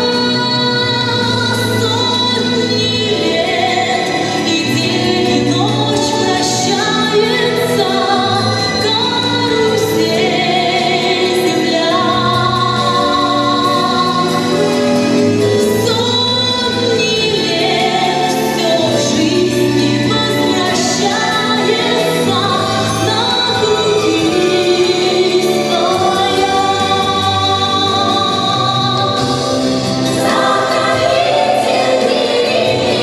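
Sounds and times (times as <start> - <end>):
instrumental accompaniment: 0.0 - 33.0
group of voices singing: 17.4 - 33.0.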